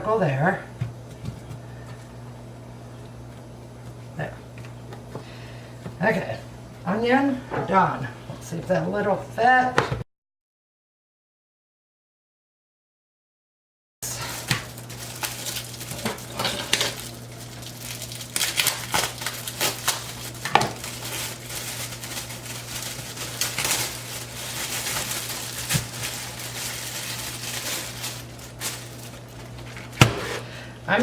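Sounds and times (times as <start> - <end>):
steady low hum: 0.0 - 9.8, 14.0 - 31.0
plastic containers and utensils clattering: 14.3 - 17.1, 18.4 - 30.5.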